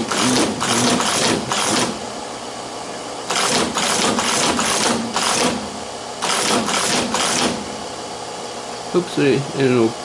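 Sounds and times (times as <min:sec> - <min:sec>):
teleprinters clattering: 0:00.0 - 0:02.0, 0:03.3 - 0:05.6, 0:06.2 - 0:07.6
teleprinter motors running: 0:00.0 - 0:02.2, 0:02.9 - 0:08.0.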